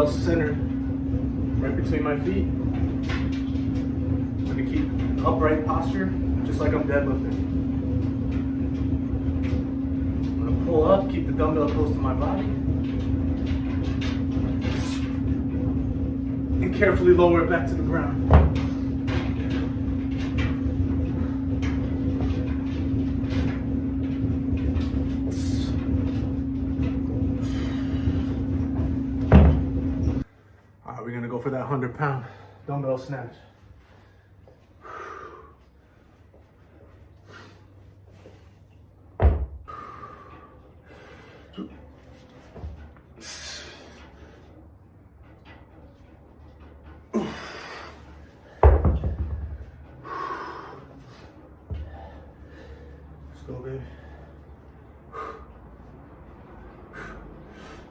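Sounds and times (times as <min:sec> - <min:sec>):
steady mechanical hum: 0:00.0 - 0:57.9
weightlifter breathing hard and straining: 0:27.4 - 0:29.2, 0:33.4 - 0:38.7, 0:39.5 - 0:44.8, 0:47.0 - 0:57.9.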